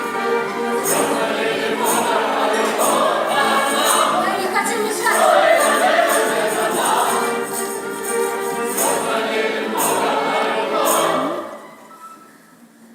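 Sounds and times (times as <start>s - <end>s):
group of voices singing: 0.0s - 11.6s
music: 0.0s - 12.9s.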